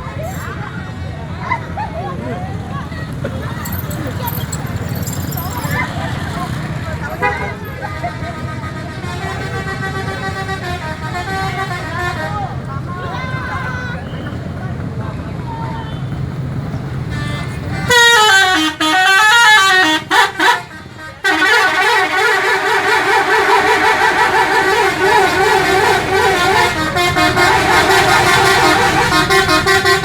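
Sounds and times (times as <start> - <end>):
low engine rumble: 0.0 - 30.0
multi-tone musical air horn: 6.7 - 12.6, 17.1 - 30.0.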